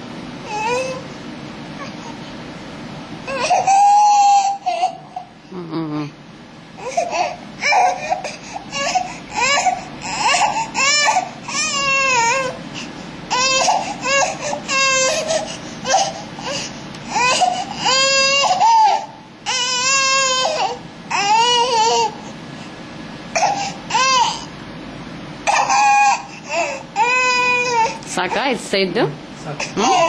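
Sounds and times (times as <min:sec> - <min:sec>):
baby crying: 0:00.5 - 0:01.1, 0:03.3 - 0:06.0, 0:06.8 - 0:22.3, 0:23.4 - 0:24.5, 0:25.4 - 0:28.0, 0:29.6 - 0:30.0.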